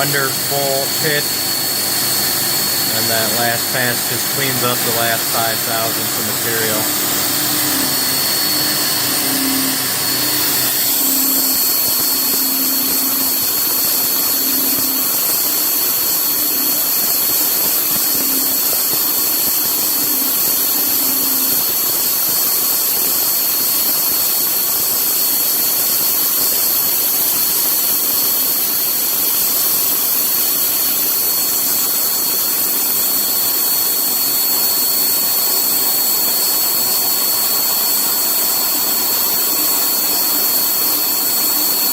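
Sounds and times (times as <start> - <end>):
rushing machine noise: 0.0 - 20.7
high-pitched spindle whine: 0.0 - 24.4, 27.4 - 41.9.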